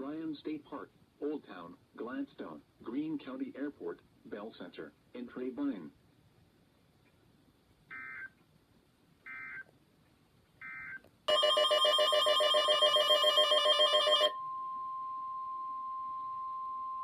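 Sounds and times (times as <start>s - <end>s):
steady alarm tone: 10.6s - 15.3s.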